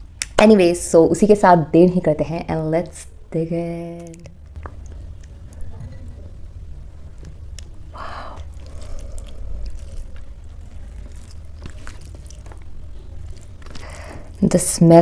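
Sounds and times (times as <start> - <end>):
steady low hum: 0.0 - 15.0
chewing and mouth sounds: 4.2 - 14.9.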